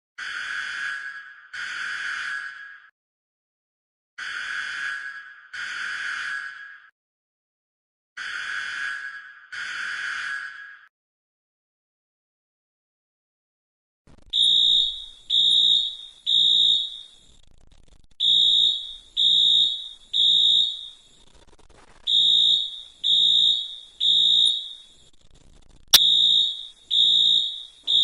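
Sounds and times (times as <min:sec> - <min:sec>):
fire alarm beeps: 0:00.2 - 0:02.9, 0:04.2 - 0:06.9, 0:08.2 - 0:10.9, 0:14.4 - 0:17.2, 0:18.2 - 0:21.0, 0:22.1 - 0:25.0, 0:26.0 - 0:28.0.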